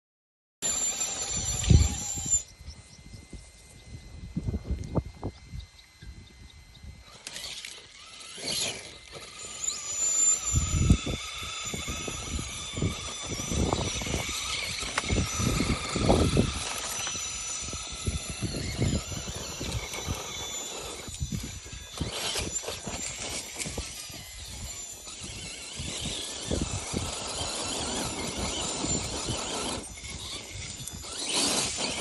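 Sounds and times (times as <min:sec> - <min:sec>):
electric motor and gearbox whine: 0:00.6 - 0:32.0.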